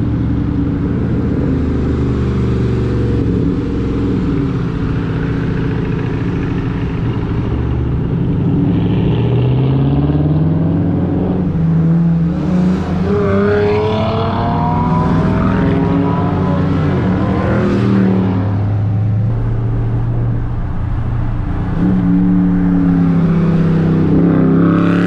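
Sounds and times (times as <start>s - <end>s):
car engine revving: 0.0s - 25.0s
rising whine: 6.9s - 25.0s.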